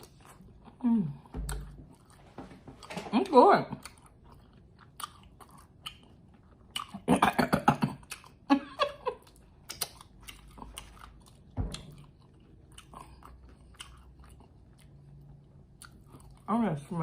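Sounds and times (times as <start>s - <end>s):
chewing food: 0.0s - 2.9s, 3.6s - 16.5s
low thump: 1.3s - 2.9s, 11.6s - 12.1s
wet mouth clicks: 9.7s - 11.0s.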